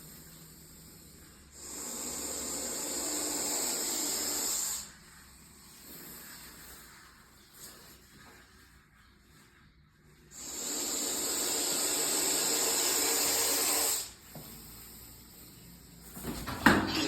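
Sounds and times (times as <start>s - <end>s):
snake hissing loudly: 0.0s - 6.7s, 10.3s - 15.5s.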